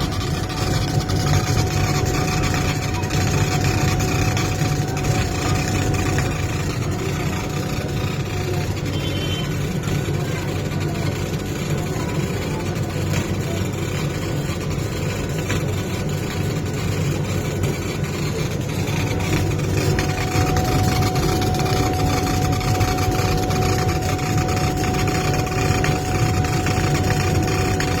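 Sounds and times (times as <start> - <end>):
cutting machine humming: 0.0 - 11.7, 18.1 - 28.0
thin steady whine: 0.0 - 28.0.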